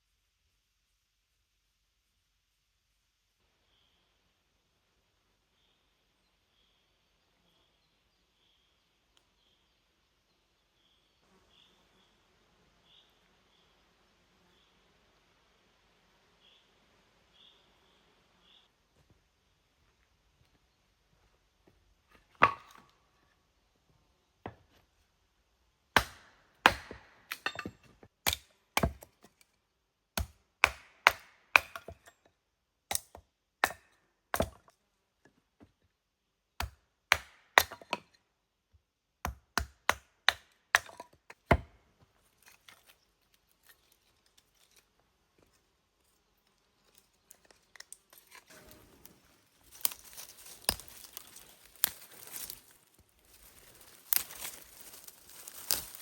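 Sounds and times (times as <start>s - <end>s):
blade chopping wood: 26.0s - 29.1s, 30.2s - 32.1s, 36.6s - 38.0s
rustling crinkling: 46.8s - 56.0s.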